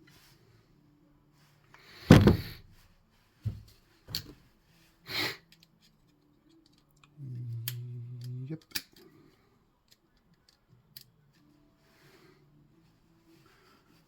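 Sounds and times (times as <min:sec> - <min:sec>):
heavy clunk of engine parts: 0:02.1 - 0:02.6
person humming: 0:07.2 - 0:08.6.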